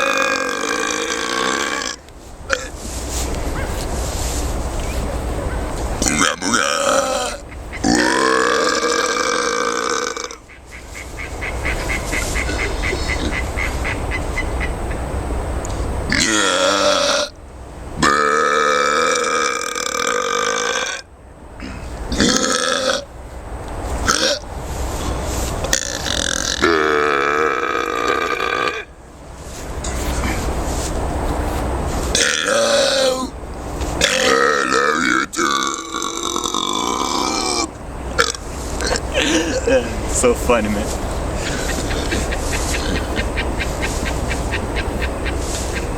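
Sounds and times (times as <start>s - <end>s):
man burping: 0.0s - 2.8s, 16.1s - 17.3s, 21.6s - 23.1s, 34.0s - 40.1s.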